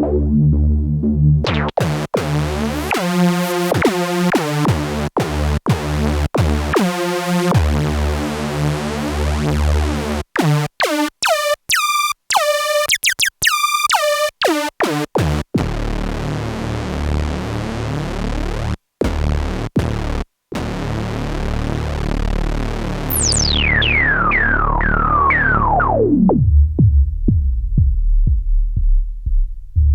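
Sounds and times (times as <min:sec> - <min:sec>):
low steady bass tone: 0:00.0 - 0:02.9, 0:15.6 - 0:29.9
synthesizer notes with pitch swoop: 0:00.0 - 0:04.6, 0:06.7 - 0:15.4, 0:21.4 - 0:27.6.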